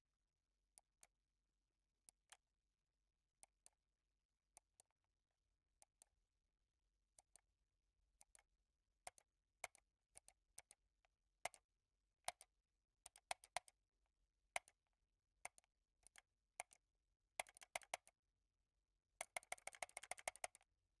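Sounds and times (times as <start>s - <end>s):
computer mouse clicks: 17.4s - 18.1s, 19.2s - 20.7s.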